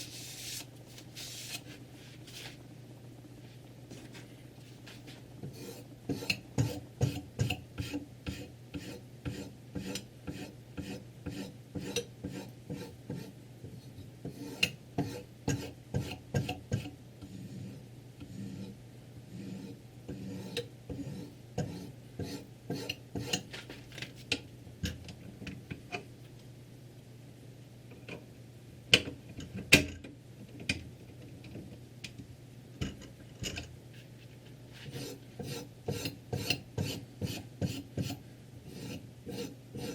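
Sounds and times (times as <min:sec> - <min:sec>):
sharpening stone rasping on knife: 0:34.9 - 0:39.9.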